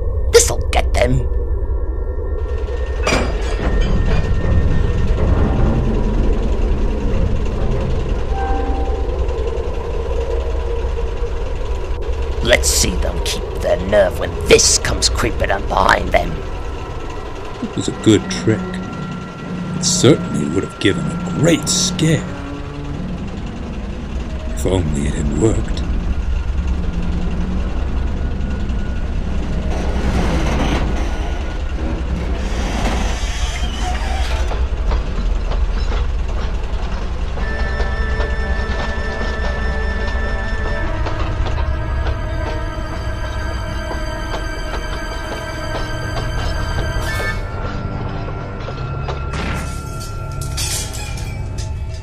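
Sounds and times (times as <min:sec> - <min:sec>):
locomotive low rumble: 0:00.0 - 0:52.0
brief faint tone: 0:08.3 - 0:09.6.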